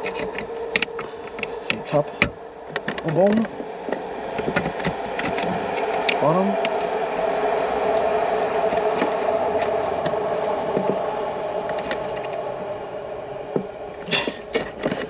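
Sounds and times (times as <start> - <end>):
plastic clicks and scrapes: 0.0 - 6.8, 14.0 - 15.0
steady hum: 0.0 - 15.0.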